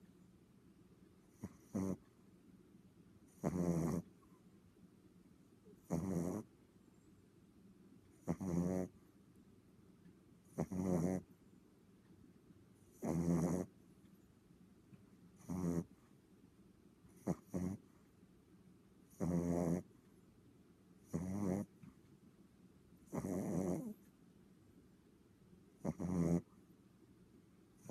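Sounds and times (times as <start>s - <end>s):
dog snoring: 1.3s - 2.0s, 3.3s - 4.1s, 5.8s - 6.5s, 8.2s - 9.0s, 10.5s - 11.3s, 12.9s - 13.7s, 15.4s - 16.0s, 17.1s - 18.0s, 19.1s - 19.9s, 21.0s - 21.7s, 23.1s - 24.1s, 25.8s - 26.5s.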